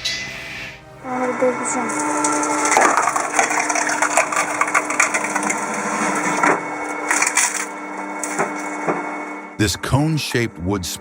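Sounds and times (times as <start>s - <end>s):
motor hum: 0.0s - 11.0s
wood cracking and splintering: 2.0s - 9.1s.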